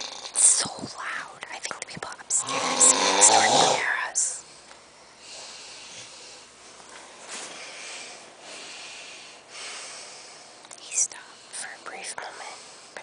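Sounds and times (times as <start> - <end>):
person snoring: 0.0 - 0.6, 2.3 - 4.4.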